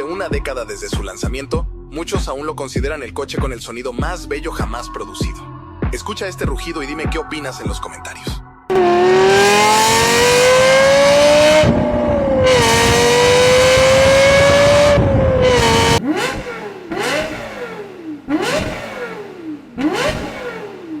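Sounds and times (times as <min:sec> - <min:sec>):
car engine accelerating hard: 0:08.7 - 0:21.0
engine throttle blips: 0:08.7 - 0:21.0.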